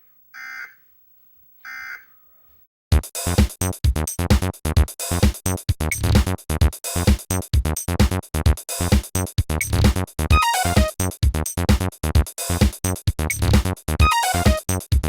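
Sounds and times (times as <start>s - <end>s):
fast drum machine beat: 2.9s - 15.0s
synthesizer chords: 10.3s - 11.0s, 13.5s - 14.8s.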